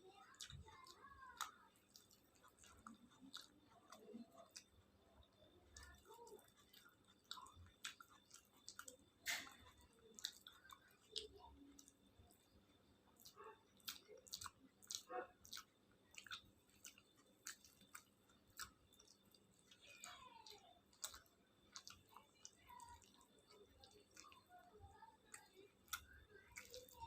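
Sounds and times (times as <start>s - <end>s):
person chewing: 0.0s - 27.0s.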